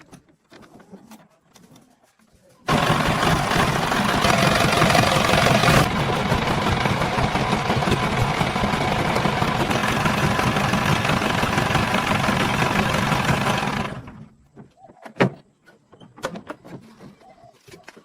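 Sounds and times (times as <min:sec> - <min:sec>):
car engine running: 0:02.7 - 0:14.3.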